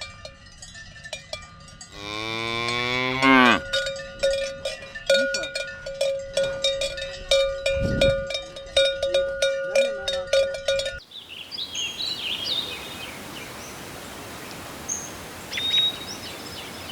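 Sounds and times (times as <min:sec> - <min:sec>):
cowbells clanking: 0:00.0 - 0:11.0
birds chirping: 0:11.0 - 0:16.9
outdoor hiss: 0:11.0 - 0:16.9.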